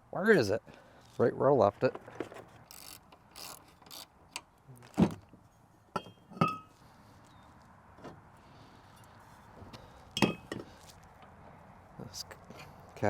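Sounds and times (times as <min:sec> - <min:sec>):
metal tools knocking and clinking: 0:05.9 - 0:06.7, 0:10.2 - 0:10.7.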